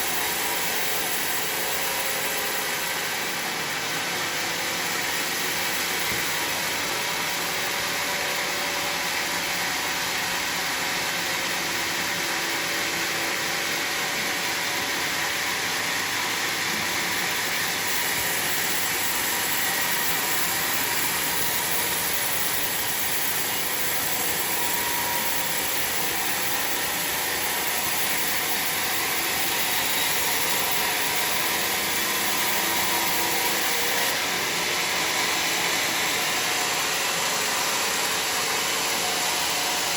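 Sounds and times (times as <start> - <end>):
sawmill saw cutting wood: 0.0 - 39.9.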